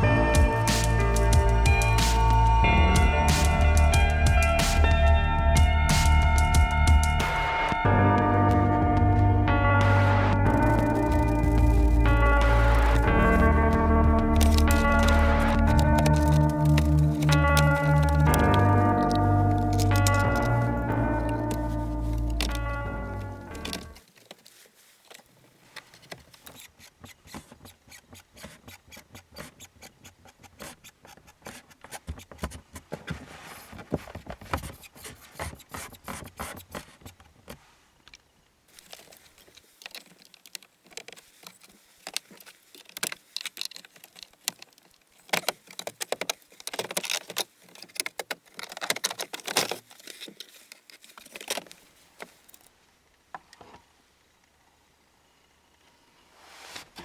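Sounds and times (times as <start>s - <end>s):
hands clicking plastic trim: 10.5s - 24.0s, 39.0s - 52.4s.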